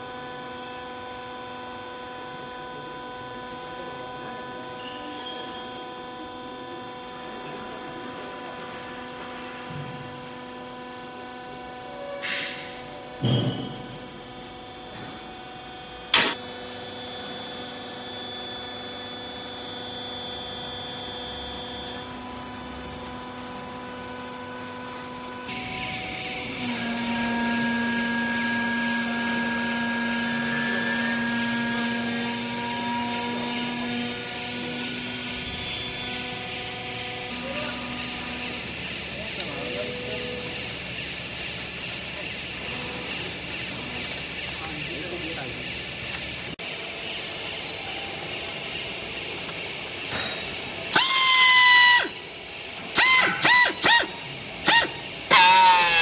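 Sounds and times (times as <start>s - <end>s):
hydraulic pump motor humming: 0.0s - 56.0s
hiss: 53.0s - 56.0s.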